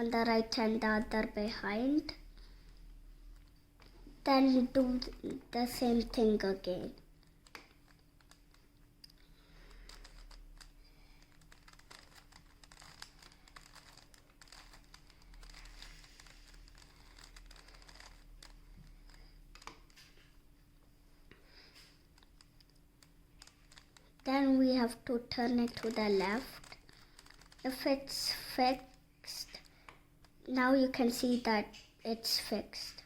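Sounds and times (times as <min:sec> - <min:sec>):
steady low hum: 0:00.0 - 0:31.2
plastic cube clicking: 0:07.2 - 0:20.1, 0:22.2 - 0:24.2, 0:25.6 - 0:27.8.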